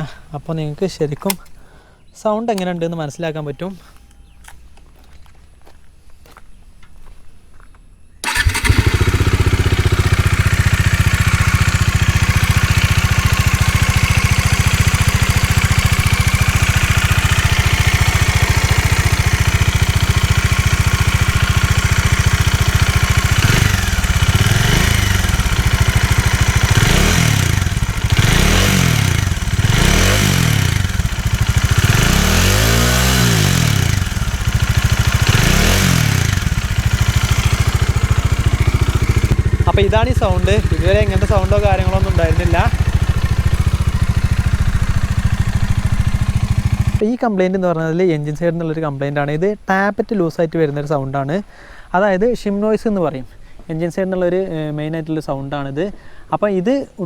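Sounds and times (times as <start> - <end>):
engine tapping noise: 8.2 - 47.0
motorcycle engine idling and revving: 8.2 - 47.0.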